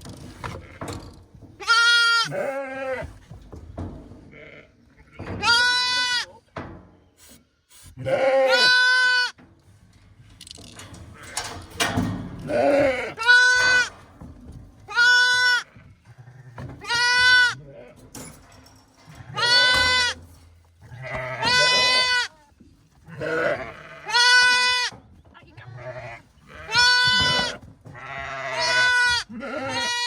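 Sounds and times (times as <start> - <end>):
sheep bleating: 1.6 - 3.1, 4.3 - 6.4, 8.0 - 9.4, 12.5 - 13.9, 14.9 - 18.0, 19.2 - 20.2, 20.8 - 25.0, 25.6 - 30.0.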